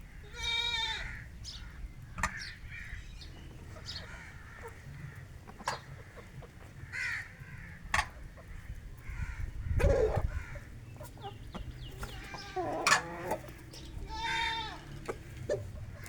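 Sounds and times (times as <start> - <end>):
chickens calling: 0.0 - 16.0
harsh caw-like call: 6.9 - 7.7.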